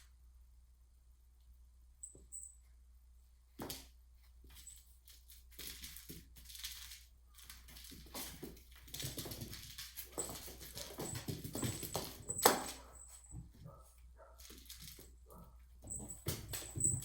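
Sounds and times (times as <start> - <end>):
cat scrabbling and pouncing: 3.6 - 17.0.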